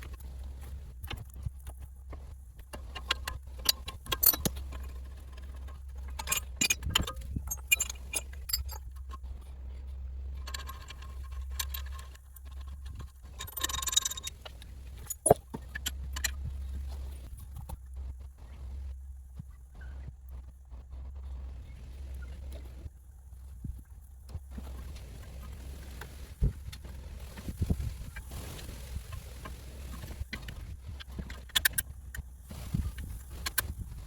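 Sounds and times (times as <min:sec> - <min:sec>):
steady low hum: 0:00.0 - 0:34.0
metal tools clinking and scraping: 0:03.6 - 0:08.9, 0:10.4 - 0:16.4.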